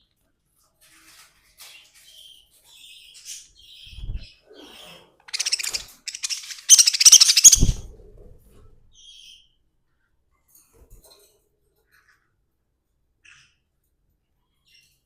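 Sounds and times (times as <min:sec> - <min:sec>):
budgerigars chirping: 0:05.3 - 0:07.8.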